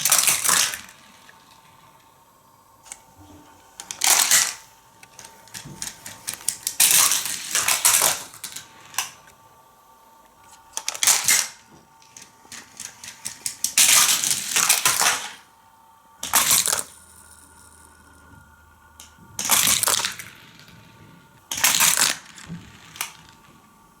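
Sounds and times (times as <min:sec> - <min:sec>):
toy cars rattling on plastic track: 0:00.0 - 0:01.9, 0:03.8 - 0:09.3, 0:10.7 - 0:15.5, 0:16.2 - 0:18.0, 0:19.0 - 0:23.7.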